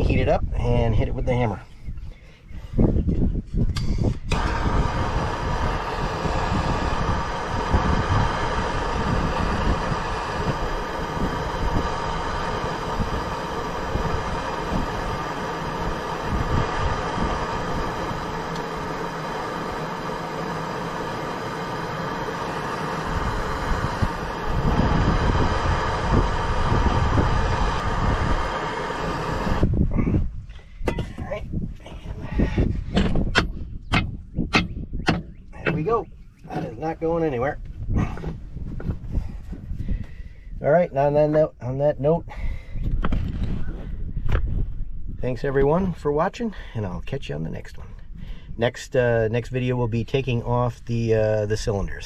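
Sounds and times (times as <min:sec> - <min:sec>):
low rumble: 0:02.8 - 0:41.7
gas torch flame burning: 0:03.7 - 0:30.2.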